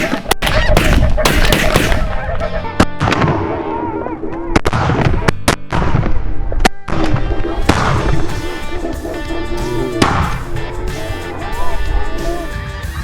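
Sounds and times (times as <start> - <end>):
shotgun shots: 0.0 - 2.4
geese calling: 0.0 - 2.9, 7.0 - 13.0
background music: 0.0 - 4.2, 5.0 - 13.0.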